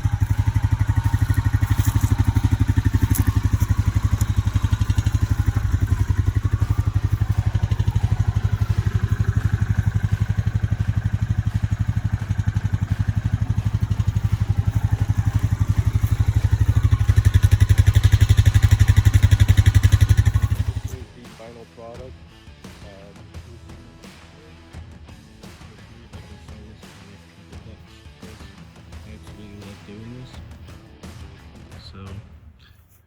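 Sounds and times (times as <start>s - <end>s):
quad bike engine running: 0.0s - 21.3s.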